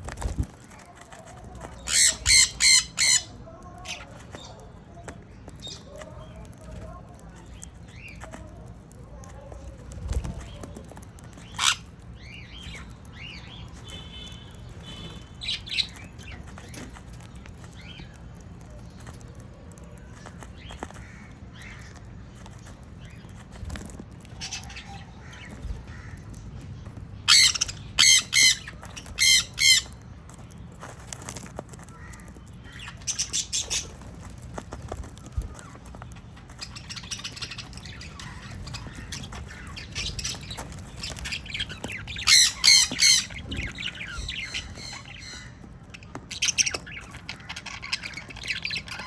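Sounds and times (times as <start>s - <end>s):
parrot squawks: 1.8s - 3.3s, 27.3s - 30.0s, 42.2s - 43.5s
parrot chirps: 1.8s - 4.1s, 11.4s - 16.4s, 27.3s - 30.0s, 36.1s - 49.0s
parrot harsh screeches: 1.9s - 3.3s, 27.3s - 29.9s.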